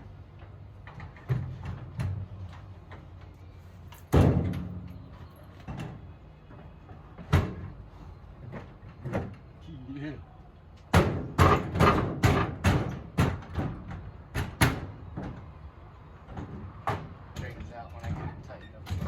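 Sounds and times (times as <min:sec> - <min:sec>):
hollow metal knocks and bangs: 0:04.1 - 0:05.1, 0:10.9 - 0:15.4, 0:16.3 - 0:19.0.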